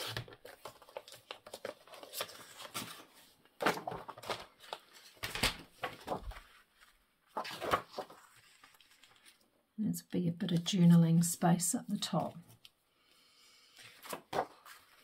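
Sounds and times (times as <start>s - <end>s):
paper rustling: 0.0s - 9.5s, 13.7s - 15.0s.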